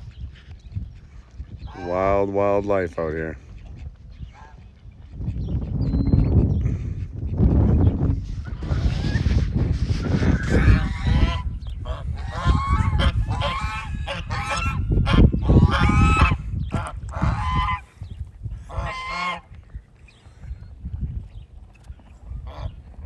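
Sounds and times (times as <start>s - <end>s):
geese honking: 10.2s - 17.9s, 18.6s - 19.5s, 22.4s - 22.8s.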